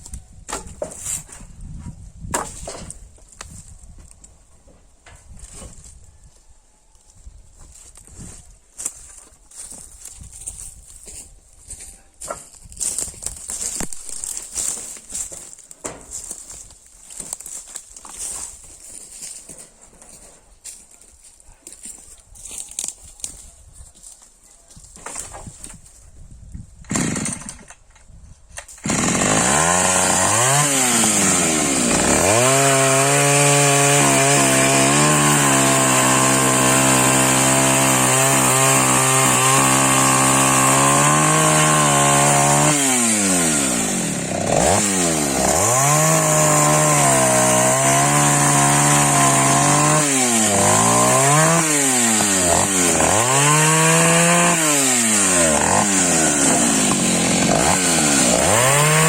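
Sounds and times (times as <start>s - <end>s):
chainsaw cutting firewood: 2.3s - 3.5s, 26.8s - 27.9s, 28.6s - 59.0s
chainsaw revving: 26.9s - 27.6s, 28.8s - 59.0s.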